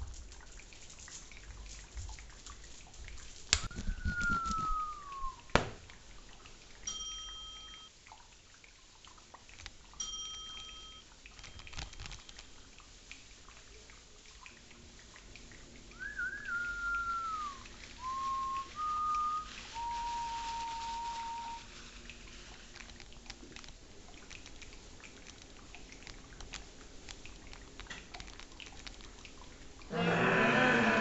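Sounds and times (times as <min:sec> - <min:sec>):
sharp knock: 0:05.5 - 0:05.8
short ringing tones: 0:06.9 - 0:07.9, 0:10.0 - 0:11.2.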